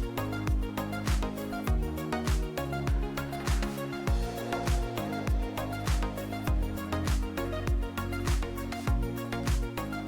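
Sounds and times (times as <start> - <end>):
deep kick drum: 0.0 - 9.8
background music with steady beat: 0.0 - 10.0
held chords: 4.1 - 7.9.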